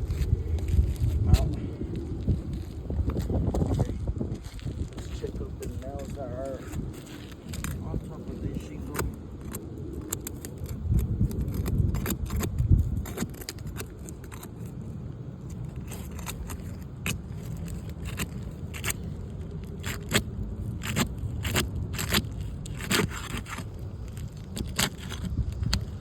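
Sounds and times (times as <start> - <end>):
low rumble: 0.0 - 13.2
tools scraping roof shingles: 5.0 - 26.0.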